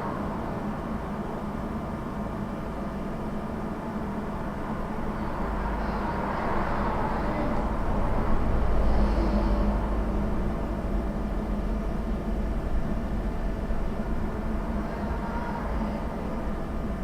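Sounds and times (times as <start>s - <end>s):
electrical hum: 0.0s - 17.0s
road traffic: 4.0s - 16.9s
vehicle rumble: 4.2s - 17.0s.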